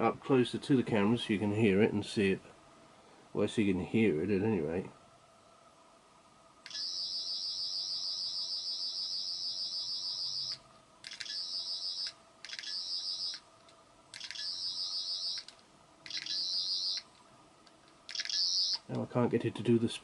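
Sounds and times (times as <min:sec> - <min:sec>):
toy high warbling electronic buzz: 0:06.6 - 0:10.6, 0:11.2 - 0:13.4, 0:14.2 - 0:17.1, 0:18.1 - 0:18.8.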